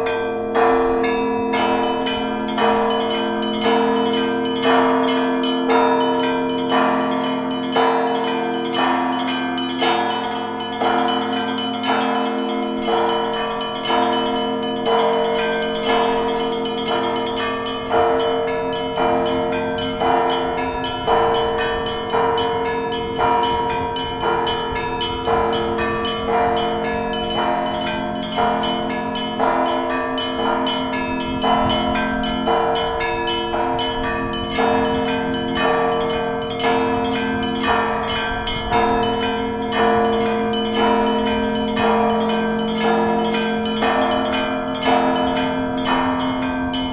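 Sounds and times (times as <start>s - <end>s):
church bells ringing: 0.0s - 46.9s
low hum of large bell: 0.0s - 46.9s.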